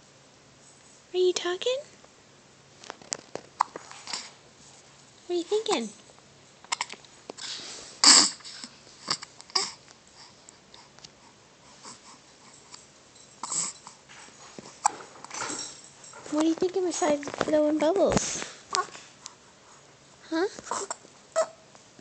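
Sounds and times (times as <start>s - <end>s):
baby hiccupping: 6.7s - 7.0s, 8.0s - 9.8s, 13.4s - 13.8s, 20.6s - 21.6s.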